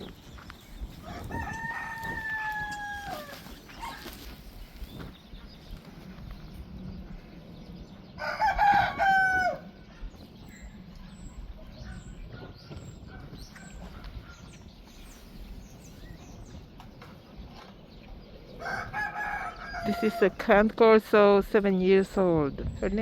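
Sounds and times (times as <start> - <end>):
small birds chirping: 0.0 - 23.0
rooster crowing: 1.0 - 3.9, 8.2 - 9.7, 18.6 - 20.3.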